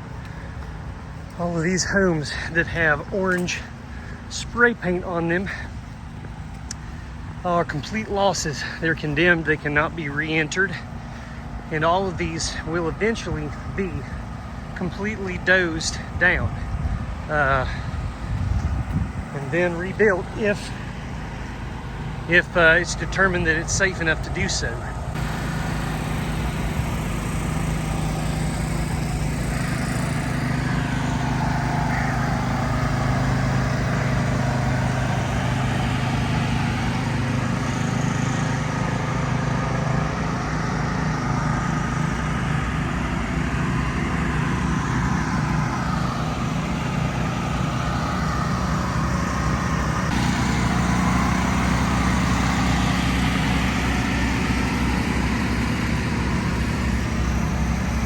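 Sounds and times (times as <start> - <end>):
engine droning: 0.0 - 58.0.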